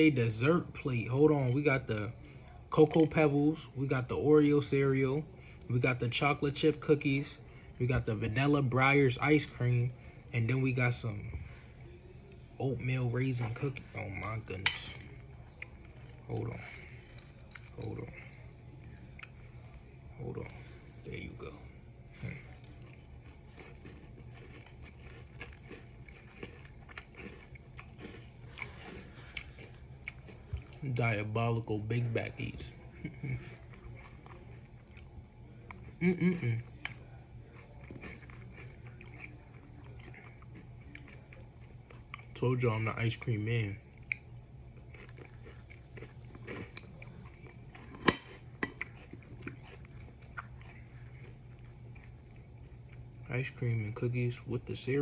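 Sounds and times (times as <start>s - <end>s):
person chewing crunchy food: 13.2s - 53.6s.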